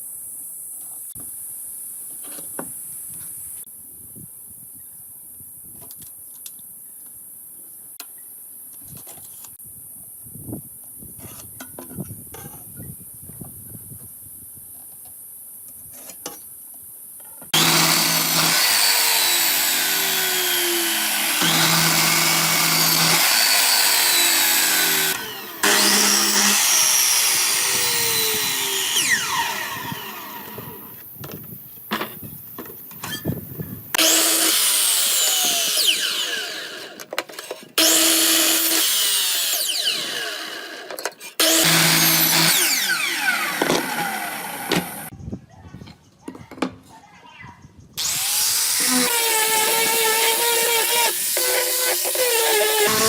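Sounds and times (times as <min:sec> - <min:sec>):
power tool cutting wood: 0:17.6 - 0:31.0, 0:34.0 - 0:45.1, 0:48.0 - 0:53.0.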